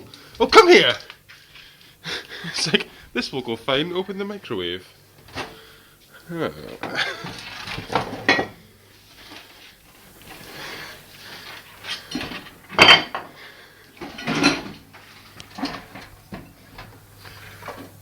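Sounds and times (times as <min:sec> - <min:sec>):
dishes clinking and clattering: 0:06.7 - 0:09.6, 0:11.4 - 0:18.0.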